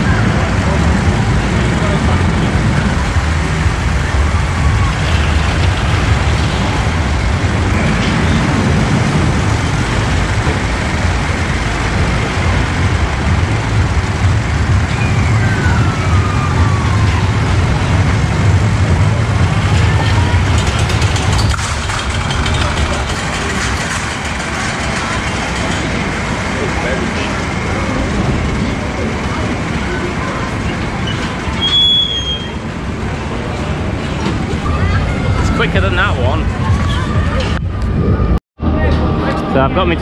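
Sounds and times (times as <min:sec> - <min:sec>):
roller coaster train rumbling: 0:00.0 - 0:40.0
falling squeal: 0:14.9 - 0:17.4, 0:31.0 - 0:32.7.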